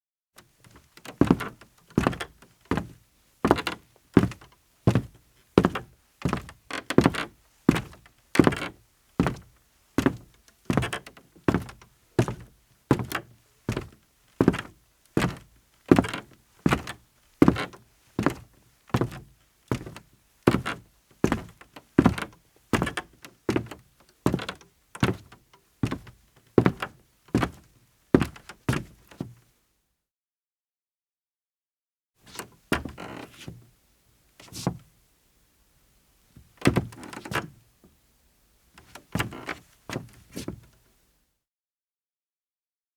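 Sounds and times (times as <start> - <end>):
footsteps on creaky wooden floor: 32.3 - 33.6, 38.9 - 40.6.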